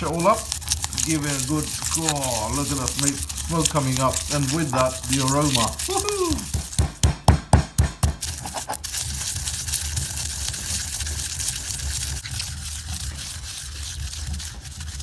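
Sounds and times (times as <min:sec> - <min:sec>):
spices grinding rasp: 0:00.0 - 0:15.0
pestle pounding in a mortar: 0:00.4 - 0:08.9.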